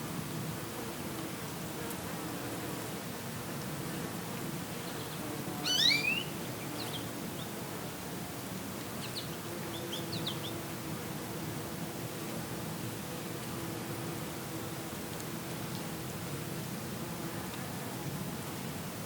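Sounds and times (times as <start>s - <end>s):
goldfinch chirping: 5.6s - 6.3s.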